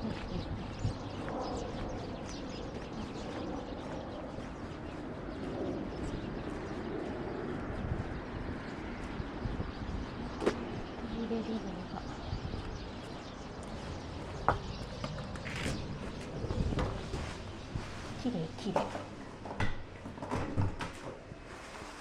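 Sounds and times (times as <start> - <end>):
low dove-like cooing: 0.0 - 7.6
birds calling: 0.0 - 21.4.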